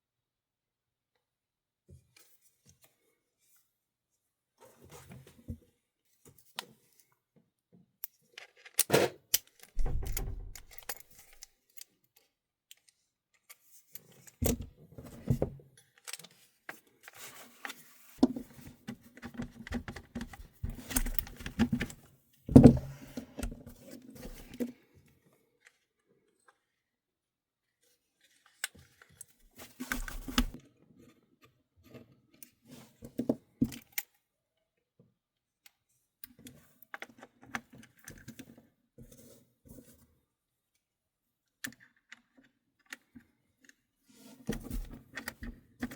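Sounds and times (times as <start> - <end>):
dull thud: 9.8 - 10.8.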